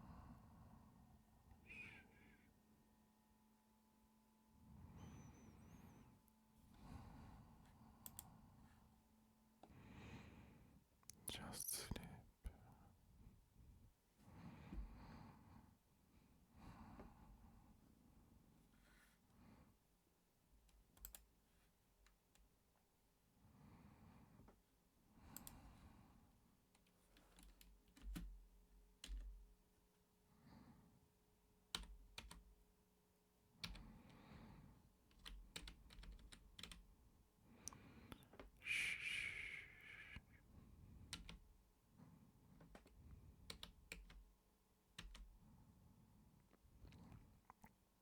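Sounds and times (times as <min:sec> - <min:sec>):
computer keyboard key clicks: 0:26.8 - 0:28.4, 0:29.0 - 0:29.3, 0:35.1 - 0:36.8, 0:42.6 - 0:44.2
soft hissing: 0:38.6 - 0:40.2.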